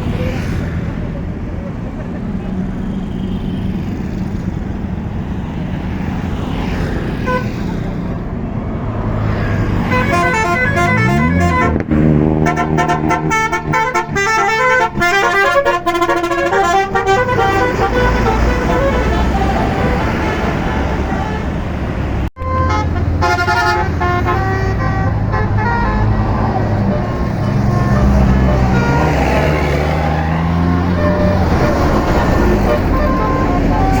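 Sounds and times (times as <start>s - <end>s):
bus engine: 0.0s - 34.0s
traffic noise: 0.0s - 34.0s
bus horn playing a melody: 7.2s - 7.6s, 9.8s - 21.7s, 22.4s - 34.0s.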